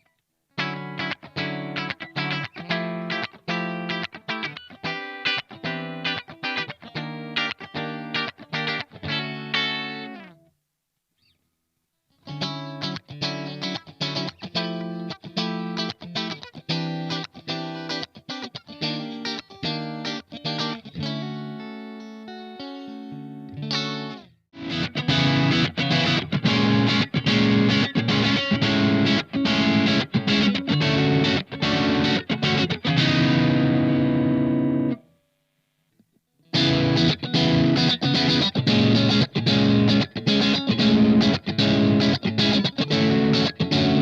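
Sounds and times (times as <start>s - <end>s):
electric guitar chord strumming: 0.6s - 10.4s, 12.3s - 35.2s, 36.5s - 44.0s
electric guitar single notes: 12.3s - 35.3s, 36.5s - 44.0s.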